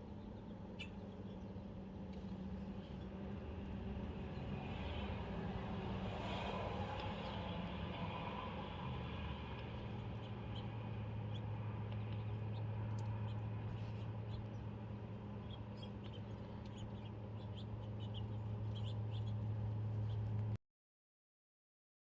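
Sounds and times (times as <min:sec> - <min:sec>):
faint high bird chirps: 0:00.0 - 0:01.6, 0:15.4 - 0:19.4
steady low hum: 0:00.0 - 0:20.6.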